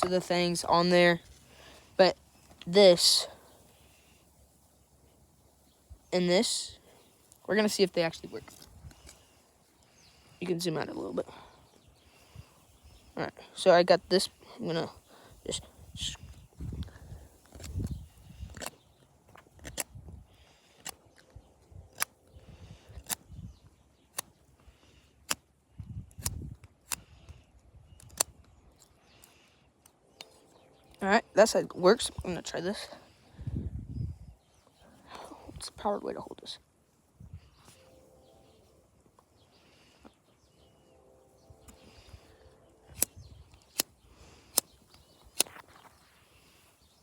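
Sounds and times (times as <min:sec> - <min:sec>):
birds chirping: 0:00.0 - 0:26.0, 0:26.8 - 0:47.0
multi-tool metal clicks: 0:19.5 - 0:20.0, 0:28.0 - 0:30.4, 0:42.9 - 0:45.6.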